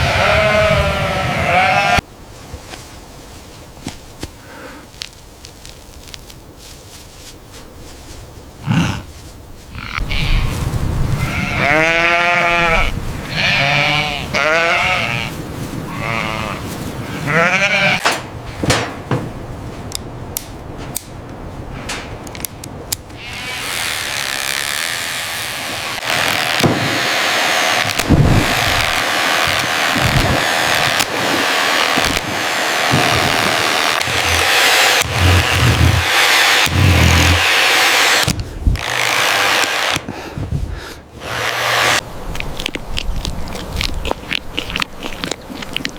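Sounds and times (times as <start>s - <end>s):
sheep bleating: 0.0s - 2.0s, 11.2s - 18.2s.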